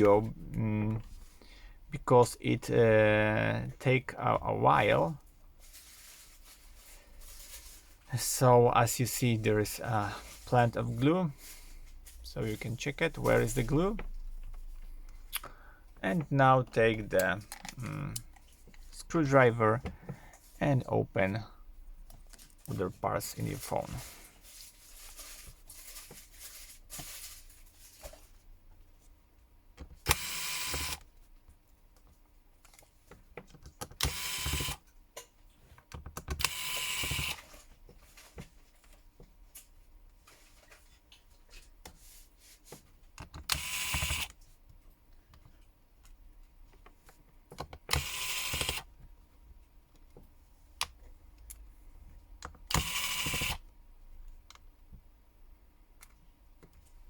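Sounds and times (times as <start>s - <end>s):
electric screwdriver whirring: 30.1s - 31.0s, 34.0s - 34.8s, 36.4s - 37.4s, 43.5s - 44.3s, 47.9s - 48.8s, 52.7s - 53.6s.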